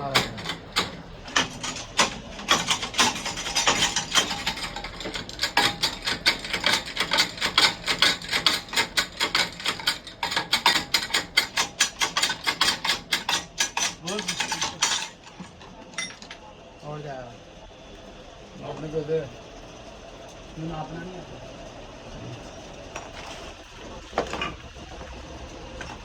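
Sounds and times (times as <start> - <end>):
metallic clicking and knocking of hand tools: 0.0 - 16.4.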